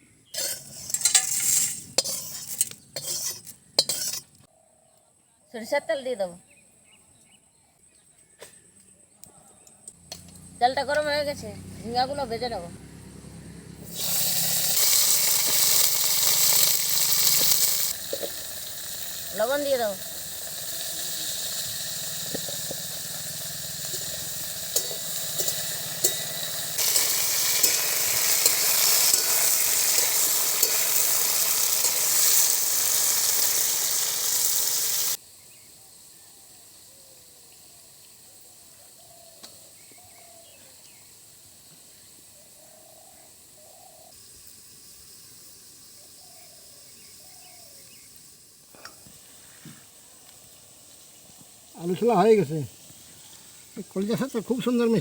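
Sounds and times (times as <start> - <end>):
vegetables sizzling in oil: 0.4 - 4.3, 13.8 - 36.1, 43.4 - 55.0
stirring clicks: 21.3 - 32.6.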